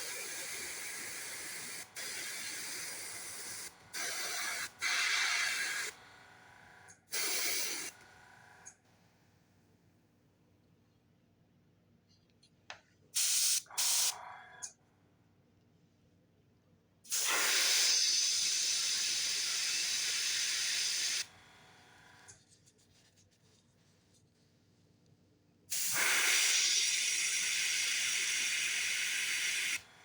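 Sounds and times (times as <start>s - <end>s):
airbrush spraying hiss: 0.0s - 6.0s, 7.2s - 8.0s, 13.2s - 14.2s, 17.1s - 21.3s, 25.7s - 29.8s.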